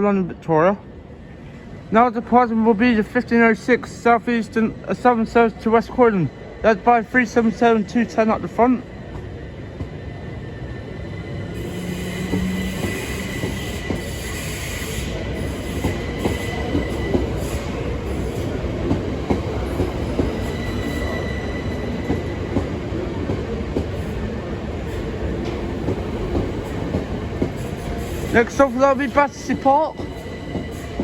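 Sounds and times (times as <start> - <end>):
high-pitched wheel squeal: 11.2 - 18.6
train wheels clicking over rail joints: 11.4 - 24.2, 25.0 - 31.0.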